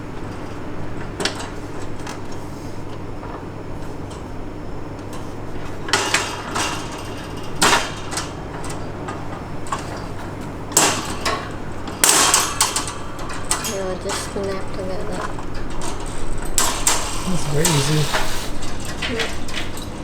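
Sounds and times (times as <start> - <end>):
cage parts clattering: 15.2 - 20.0.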